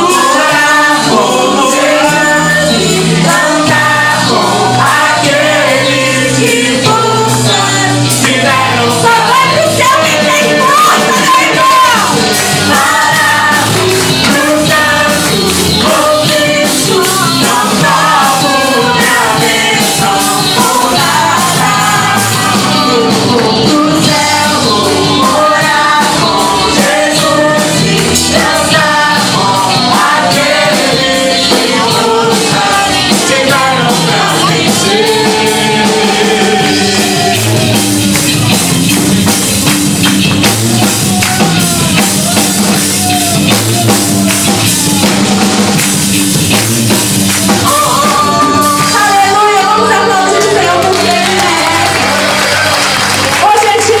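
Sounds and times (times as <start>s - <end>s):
person singing: 0.0s - 37.7s, 47.5s - 52.6s
band playing worship song: 0.0s - 54.0s.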